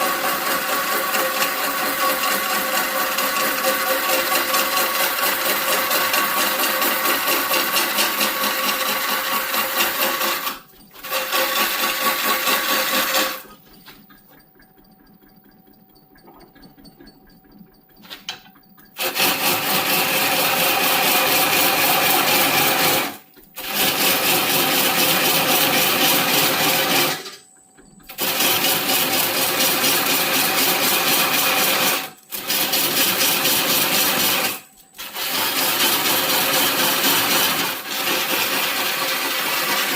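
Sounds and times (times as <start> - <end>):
power tool buzzing on wood: 0.0 - 13.6.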